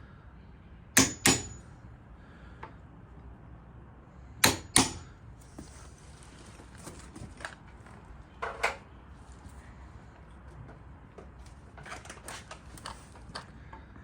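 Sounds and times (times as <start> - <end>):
chisel knocking: 1.0 - 1.6, 4.4 - 5.1.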